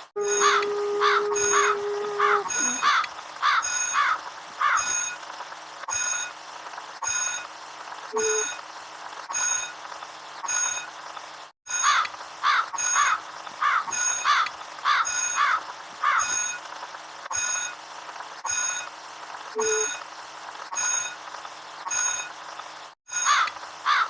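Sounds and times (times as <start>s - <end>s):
short calls falling in pitch: 0.2s - 3.1s
electronic beeping: 8.1s - 8.6s, 10.4s - 10.9s, 19.5s - 20.0s, 20.7s - 21.2s, 21.9s - 22.4s.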